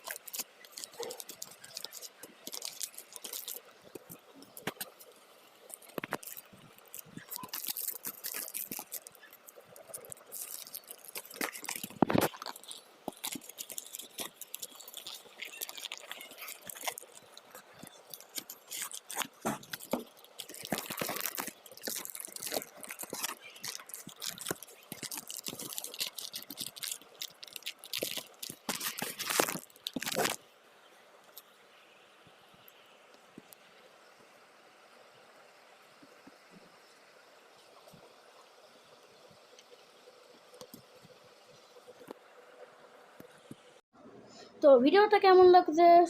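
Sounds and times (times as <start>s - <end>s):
packaging crinkling and tearing: 0.0s - 30.4s.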